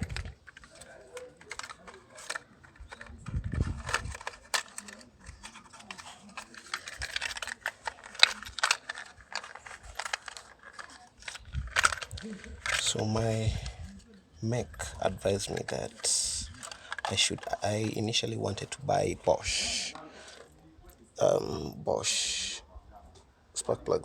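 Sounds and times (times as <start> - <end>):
small parts clicking and rattling: 0.0 - 14.0, 14.7 - 21.0.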